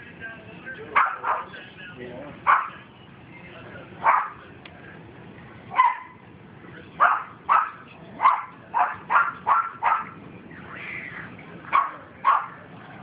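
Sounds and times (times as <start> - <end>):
dog barking: 1.0 - 1.5, 2.4 - 2.8, 4.0 - 4.4, 5.7 - 6.2, 7.0 - 10.2, 11.7 - 12.6.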